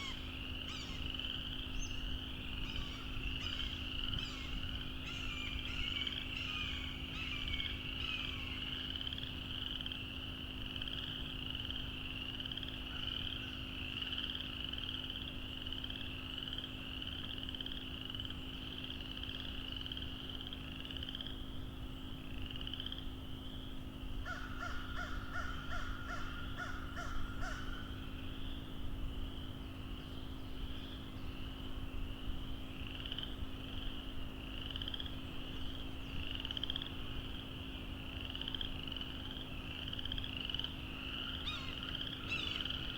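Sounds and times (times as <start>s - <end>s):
bird harsh calls: 0.0s - 1.1s, 1.8s - 8.8s, 41.0s - 42.9s
frogs trilling: 0.0s - 21.6s, 22.2s - 30.2s, 31.4s - 42.9s.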